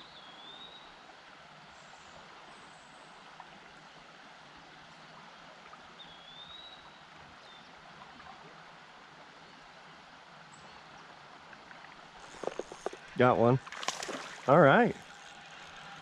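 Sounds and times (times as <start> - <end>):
flowing river water: 0.0 - 16.0.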